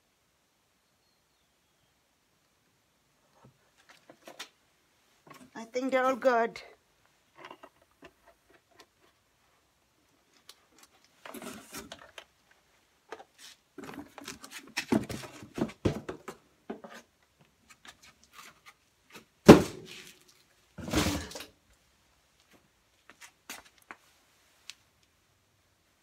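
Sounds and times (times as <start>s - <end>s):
rustle: 6.2s - 26.0s.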